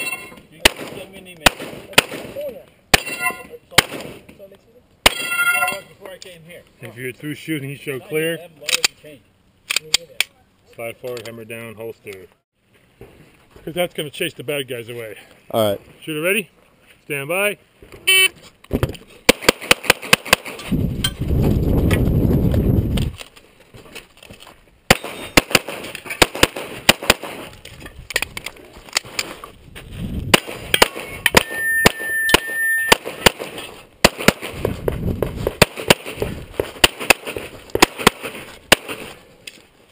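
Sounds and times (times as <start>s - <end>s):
pistol shots: 0.6s - 4.2s, 19.3s - 20.6s, 24.9s - 27.5s, 30.3s - 34.7s, 35.4s - 39.2s.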